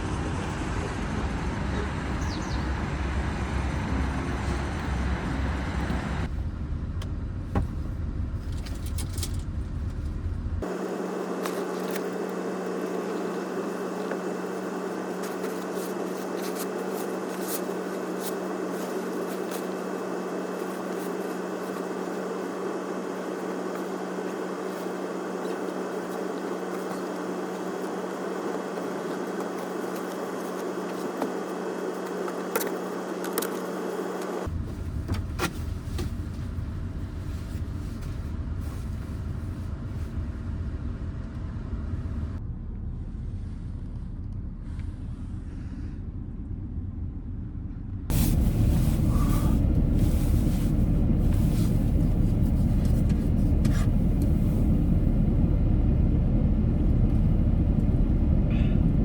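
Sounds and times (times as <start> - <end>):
road and engine noise inside a van: 0.0 - 59.0.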